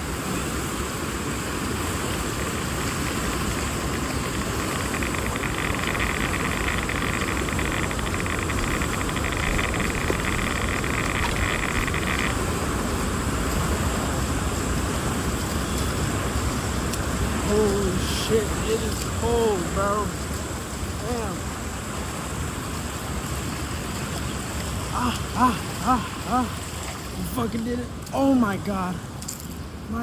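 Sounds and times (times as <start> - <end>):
creek water rushing: 0.0 - 30.0
higher rasping sound: 3.4 - 12.5.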